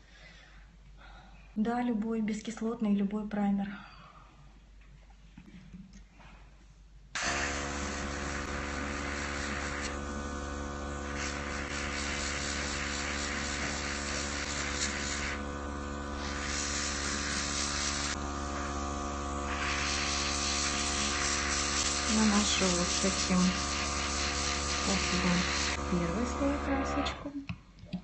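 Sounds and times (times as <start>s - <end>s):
air hissing from airbrush: 7.2s - 26.3s
compressor motor hum: 7.2s - 27.4s.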